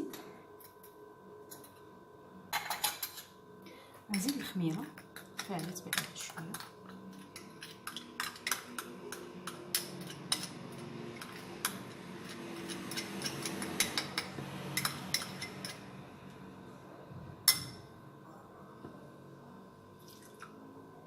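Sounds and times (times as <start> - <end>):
utensil scraping mixing bowl: 4.9 - 15.9.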